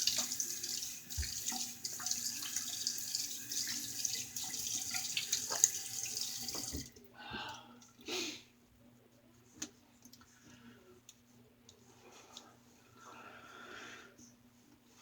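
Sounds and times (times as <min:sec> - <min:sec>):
sink tap running: 0:00.0 - 0:06.9.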